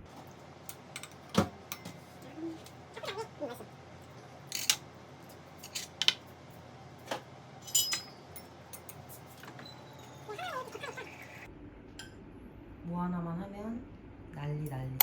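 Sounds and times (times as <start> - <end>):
utensils clicking on dishes: 0.7 - 3.2, 4.4 - 6.4, 7.6 - 9.6
ringing clink: 7.6 - 8.9.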